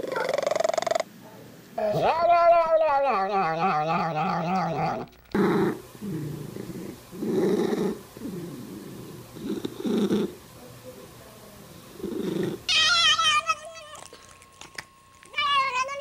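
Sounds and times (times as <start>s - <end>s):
cat rumbling growl pulses: 3.3s - 10.4s
cat yowling: 12.7s - 14.4s.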